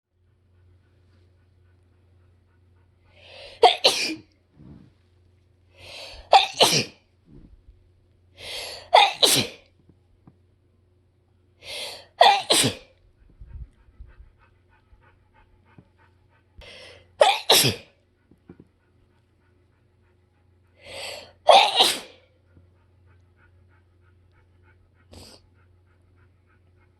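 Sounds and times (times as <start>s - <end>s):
person sneezing: 3.5s - 4.2s, 6.0s - 7.0s, 8.7s - 9.6s, 12.2s - 12.9s, 17.2s - 17.9s, 21.5s - 22.2s
quick in-breath: 8.4s - 8.9s, 16.6s - 17.1s, 20.8s - 21.4s.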